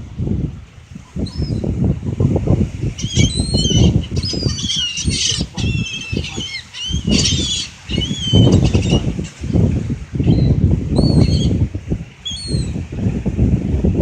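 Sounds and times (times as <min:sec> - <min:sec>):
high chirping bird calls: 0:03.0 - 0:09.2.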